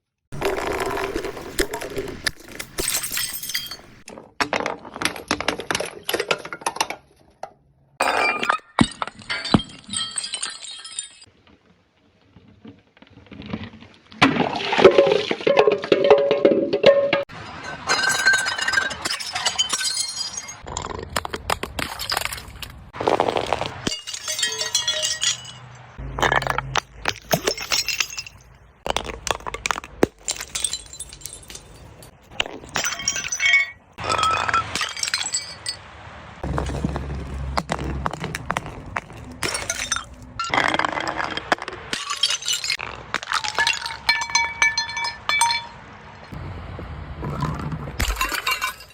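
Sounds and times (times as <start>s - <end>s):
glass bottles shattering: 0.4s - 7.0s, 8.0s - 11.3s, 14.3s - 22.7s, 23.4s - 46.4s, 48.0s - 48.9s
glass shards tinkling: 2.6s - 4.0s, 8.0s - 11.3s, 17.6s - 20.6s, 23.9s - 26.4s, 27.2s - 28.5s, 30.3s - 35.8s.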